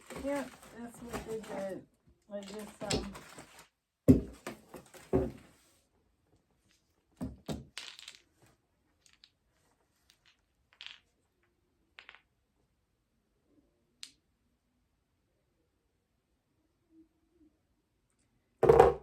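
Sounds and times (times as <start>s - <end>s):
items knocking when set down: 0.0s - 1.7s, 2.4s - 3.5s, 4.1s - 5.4s, 18.6s - 19.0s
packaging rustling: 0.0s - 1.7s, 2.4s - 3.7s.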